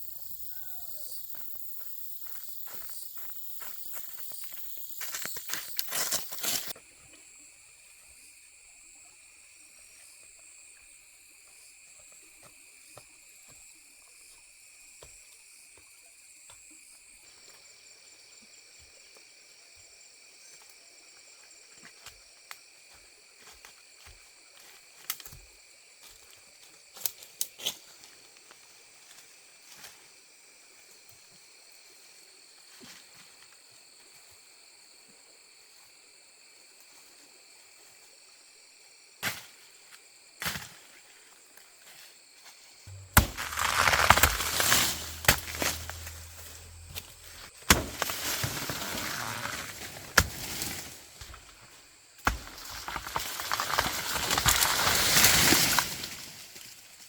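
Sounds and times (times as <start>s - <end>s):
insects chirring: 0.0s - 6.8s, 42.9s - 57.0s.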